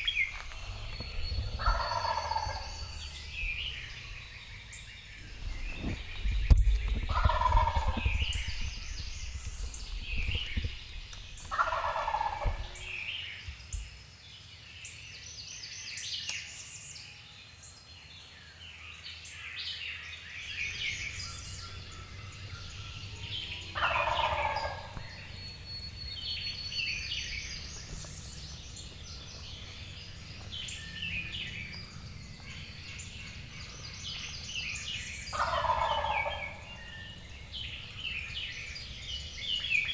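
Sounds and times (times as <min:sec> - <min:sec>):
low rumble on microphone: 0:00.0 - 0:13.9, 0:20.4 - 0:39.9
songbirds chirping and singing: 0:00.0 - 0:39.9
turkey gobbling: 0:00.1 - 0:04.1, 0:07.1 - 0:08.5, 0:11.5 - 0:12.9, 0:20.6 - 0:39.9.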